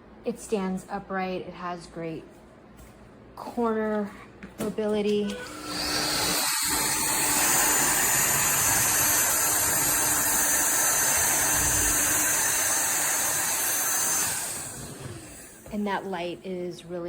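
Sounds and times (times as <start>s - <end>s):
stick vacuum running: 5.3s - 15.8s.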